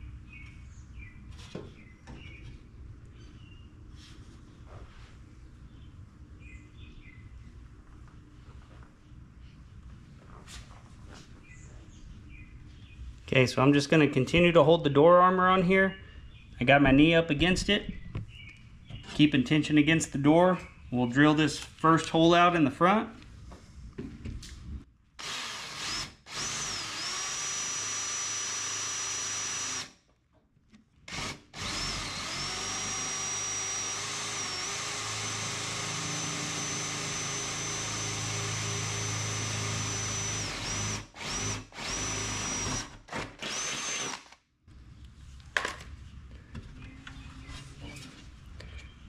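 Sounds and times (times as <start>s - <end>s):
power drill boring into steel: 25.2s - 29.9s, 31.1s - 44.3s.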